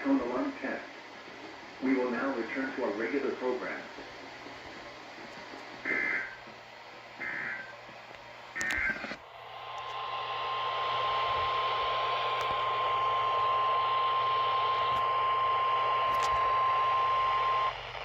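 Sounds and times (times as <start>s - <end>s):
radio hiss: 0.0s - 18.0s
steady warning alarm tone: 7.2s - 7.8s, 8.6s - 17.9s.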